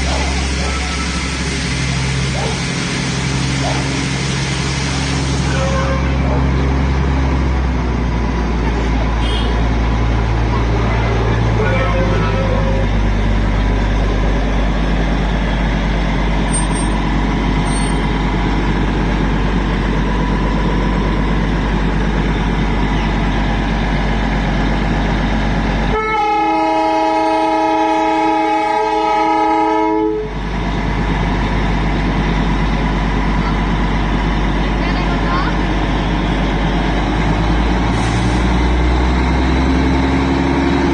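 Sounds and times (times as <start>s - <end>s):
toy train horn blast: 25.9s - 30.3s.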